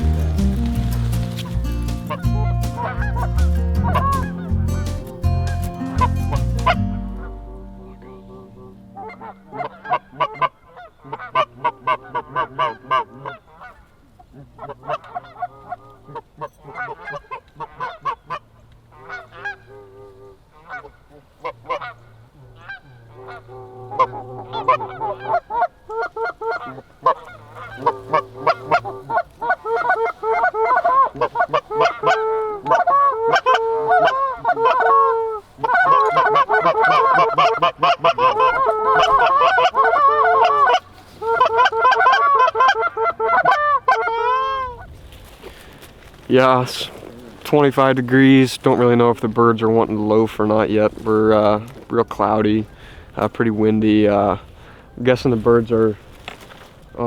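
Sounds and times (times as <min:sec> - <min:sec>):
geese honking: 0:00.0 - 0:44.8.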